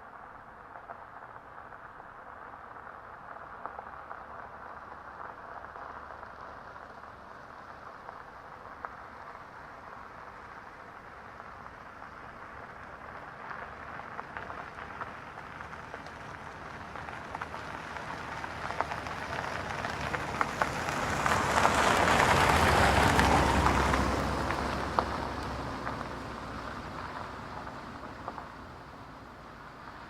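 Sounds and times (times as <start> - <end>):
car engine hum: 10.6 - 30.0
tyres crunching on gravel: 13.2 - 30.0.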